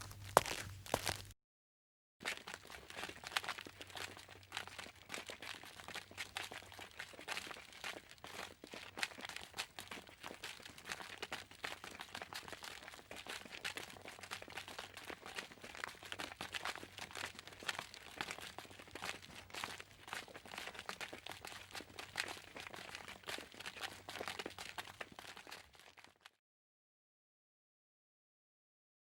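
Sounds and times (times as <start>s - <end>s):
footsteps on crunchy surface: 0.0s - 1.4s.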